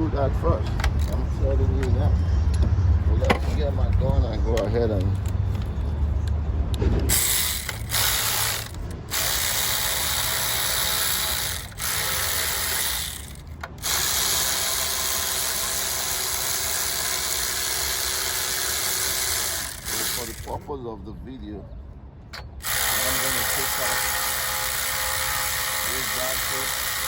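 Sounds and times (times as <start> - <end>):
cordless power tool whirring: 7.1 - 20.6, 22.6 - 27.0.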